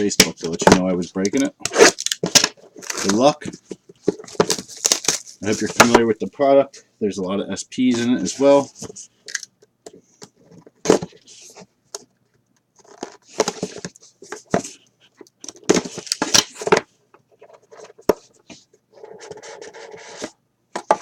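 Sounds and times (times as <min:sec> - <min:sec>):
packaging rustling and tearing: 0:01.3 - 0:03.4, 0:04.1 - 0:05.7.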